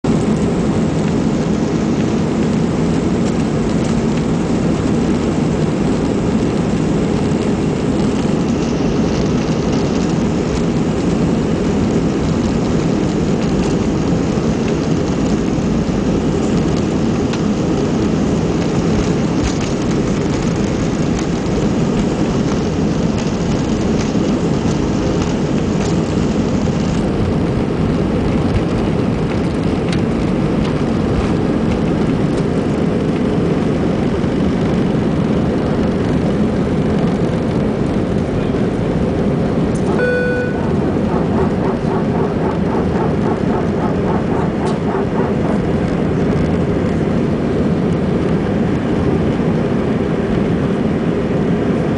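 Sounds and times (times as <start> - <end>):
jet engines roaring at takeoff: 0.0 - 51.9
airflow around fuselage: 0.1 - 51.9.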